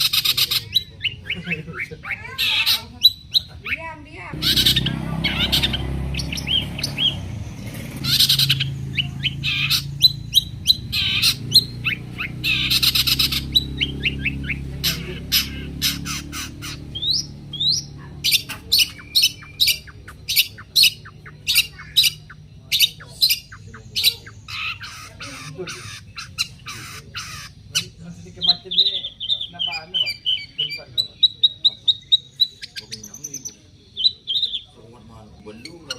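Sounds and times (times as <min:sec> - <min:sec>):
bird singing harsh chattering song: 0:00.0 - 0:35.9.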